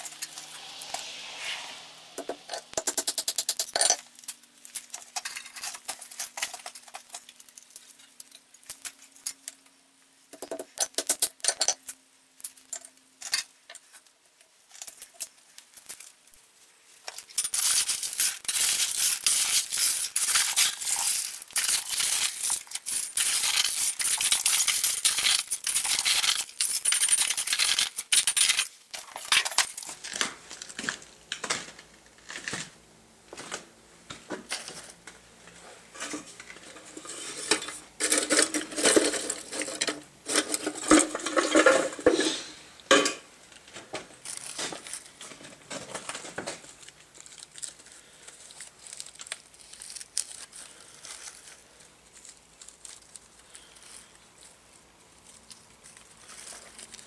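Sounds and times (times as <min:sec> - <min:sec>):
metal objects clinking and rattling: 0:02.5 - 0:09.6, 0:10.4 - 0:14.0, 0:17.1 - 0:30.2, 0:36.0 - 0:43.3.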